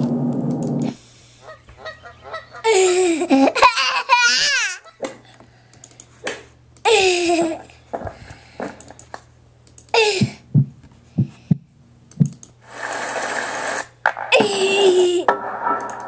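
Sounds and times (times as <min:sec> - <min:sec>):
low steady hum: 0:00.0 - 0:12.7
hiss: 0:12.7 - 0:13.9.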